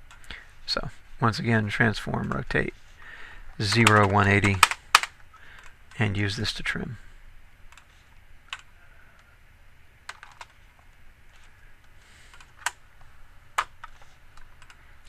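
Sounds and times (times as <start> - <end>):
faint steady background: 0.0 - 15.0
keyboard and mouse clicks: 3.7 - 6.0, 8.5 - 8.7, 12.3 - 12.8, 13.6 - 14.8.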